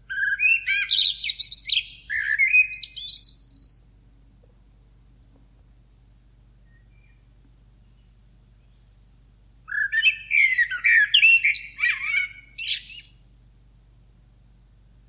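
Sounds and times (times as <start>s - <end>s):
blackbird singing: 0.1s - 3.9s, 9.7s - 13.4s.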